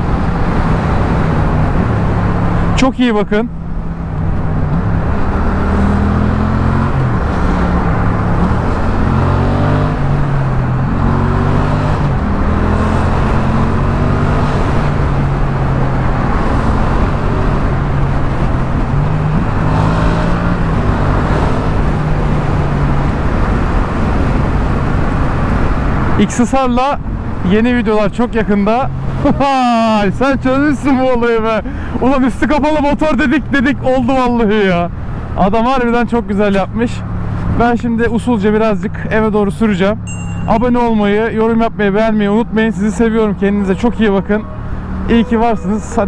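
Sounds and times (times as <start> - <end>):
motorcycle engine revving: 4.3 - 25.9.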